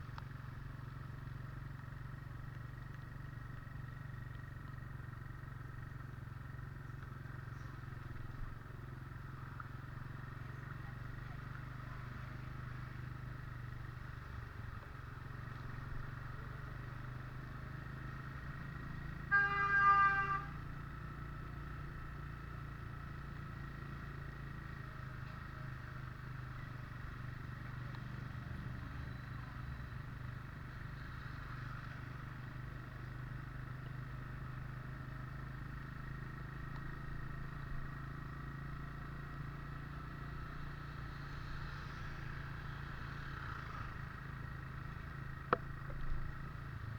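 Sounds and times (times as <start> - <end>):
vehicle engine hum and road noise: 0.0 - 46.9
vehicle horn honking: 19.1 - 20.7.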